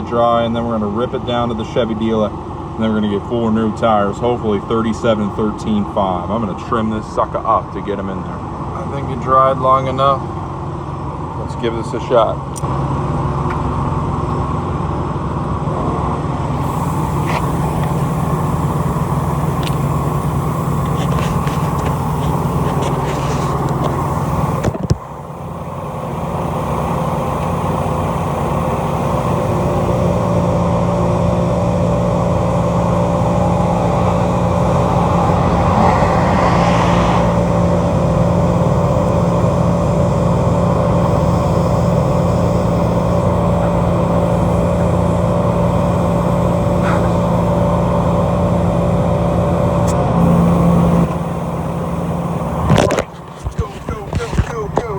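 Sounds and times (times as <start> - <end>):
pickup truck engine running: 0.0 - 54.9.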